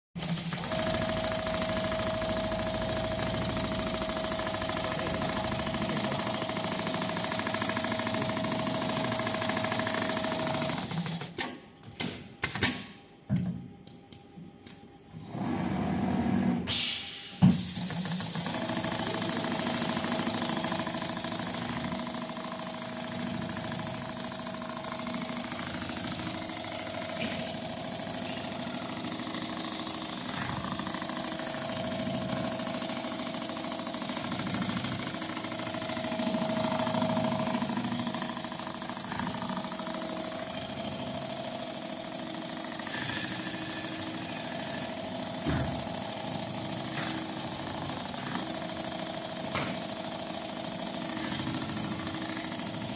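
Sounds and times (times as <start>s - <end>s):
sewing machine running: 0.2s - 11.3s, 17.5s - 52.9s.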